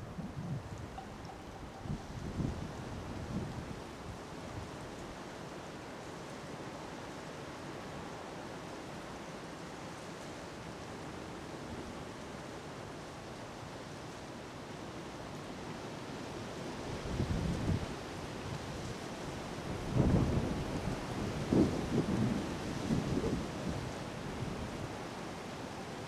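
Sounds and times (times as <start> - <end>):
wind buffeting microphone: 0.0 - 3.9.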